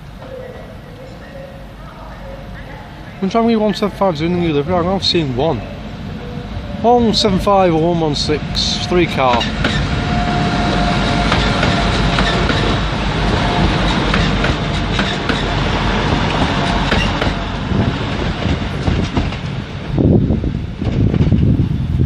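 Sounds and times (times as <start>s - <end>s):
train wheels clicking over rail joints: 8.6s - 20.0s.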